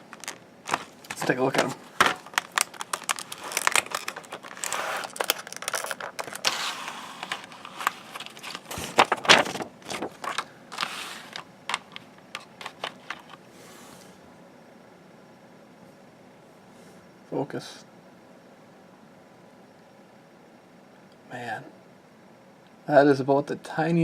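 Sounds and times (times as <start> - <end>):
plastic packaging rustling: 0.0 - 13.4.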